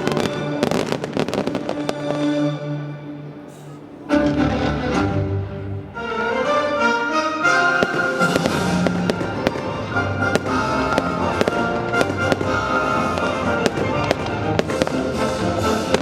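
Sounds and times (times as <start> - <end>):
fireworks bursting: 0.0 - 2.4, 7.7 - 16.0
loud music: 4.1 - 16.0.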